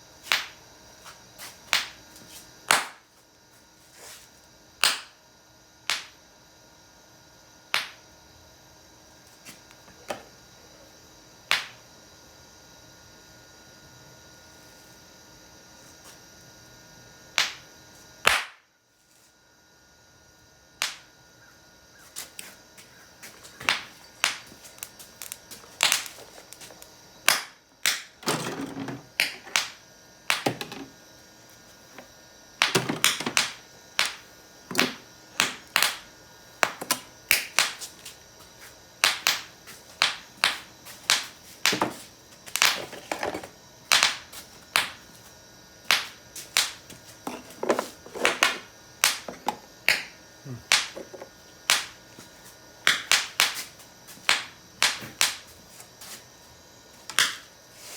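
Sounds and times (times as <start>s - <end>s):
firecracker pops: 18.3s - 18.6s, 48.3s - 49.3s.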